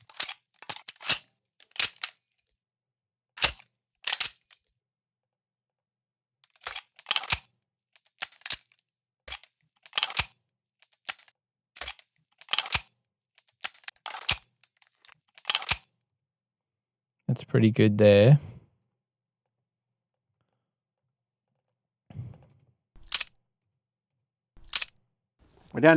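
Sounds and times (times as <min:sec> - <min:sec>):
keyboard and mouse clicks: 0:22.3 - 0:23.3, 0:24.6 - 0:24.9.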